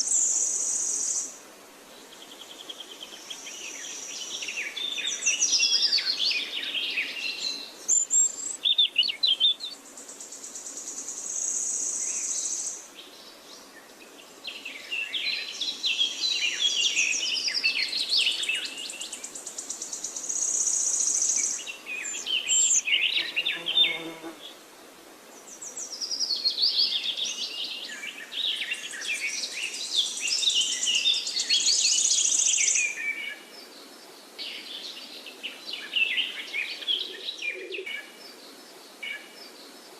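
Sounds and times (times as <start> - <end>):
birds chirping and warbling: 2.1 - 24.6, 25.4 - 39.9
high insect buzz: 22.6 - 24.6.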